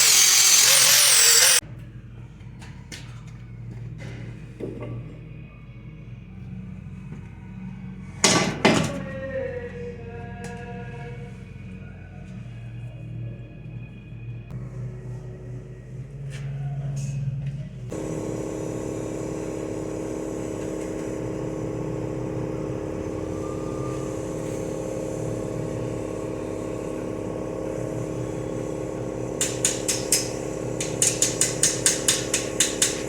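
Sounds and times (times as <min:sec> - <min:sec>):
welder humming: 0:00.0 - 0:01.6, 0:17.9 - 0:33.0.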